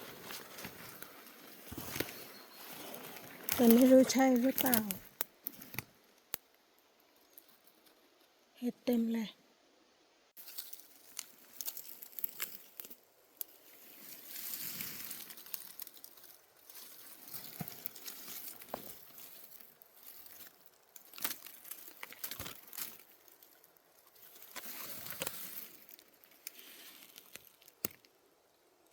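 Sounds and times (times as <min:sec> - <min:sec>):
twigs snapping: 0:00.0 - 0:08.0, 0:10.4 - 0:28.2
rustling dry vegetation and twigs: 0:00.0 - 0:08.5, 0:10.4 - 0:28.9.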